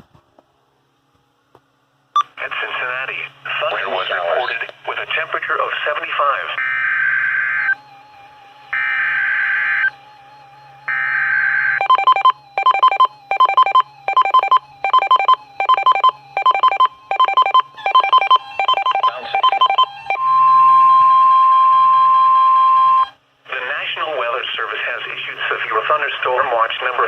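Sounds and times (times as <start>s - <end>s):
loud steady alarm tone: 6.6s - 23.2s
buzzy digital screech: 8.8s - 9.9s
rapid short beeps: 11.8s - 19.9s.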